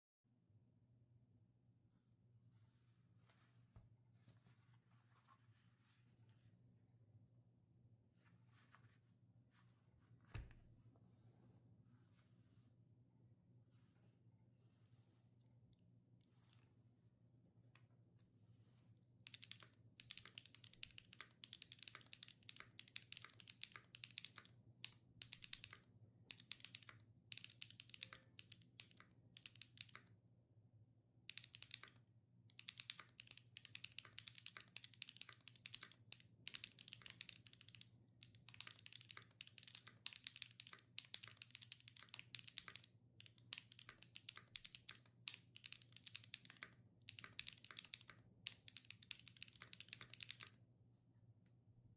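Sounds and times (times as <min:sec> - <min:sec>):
mechanical keyboard typing: 0:19.3 - 0:30.1, 0:31.3 - 0:50.5.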